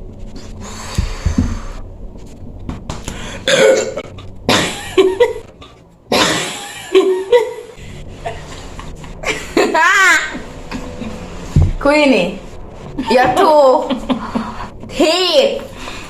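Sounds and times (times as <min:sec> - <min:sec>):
woman coughing hard: 0:03.5 - 0:05.4, 0:06.1 - 0:07.5.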